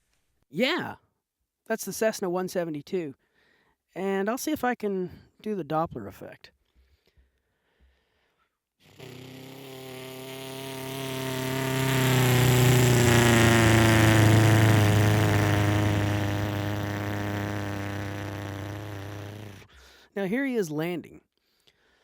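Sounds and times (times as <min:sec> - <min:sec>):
man imitating propeller plane: 0:08.8 - 0:19.8.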